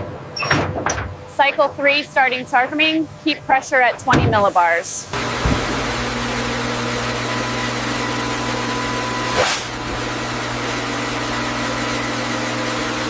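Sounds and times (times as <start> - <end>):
machine hum with held tones: 5.1 - 13.0.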